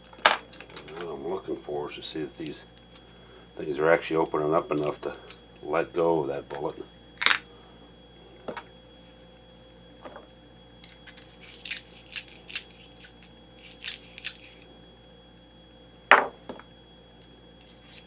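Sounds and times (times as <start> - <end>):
cartridge cases scraping and clicking: 10.8 - 14.6.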